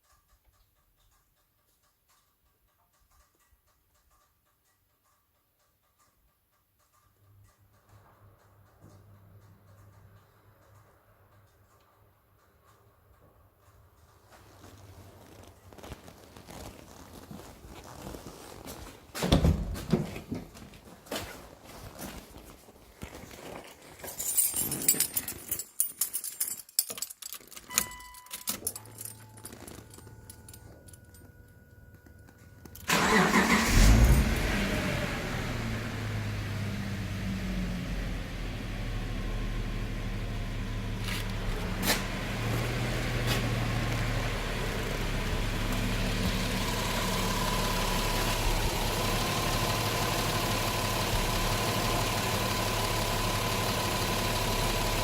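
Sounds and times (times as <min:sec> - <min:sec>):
car engine starting and idling: 0:27.7 - 0:55.0.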